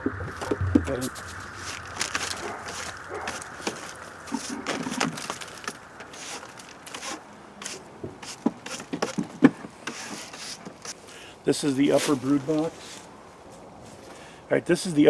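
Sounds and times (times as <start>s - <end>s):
wooden knocks and scrapes: 0.2s - 11.0s.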